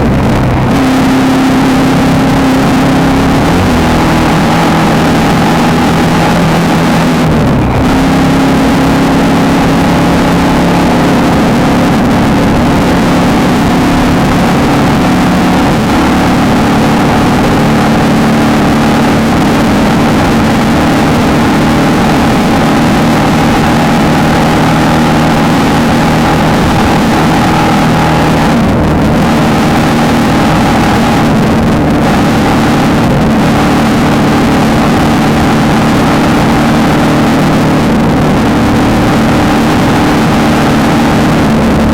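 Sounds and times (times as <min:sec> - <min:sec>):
race car engine at high revs: 0:00.0 - 0:41.9.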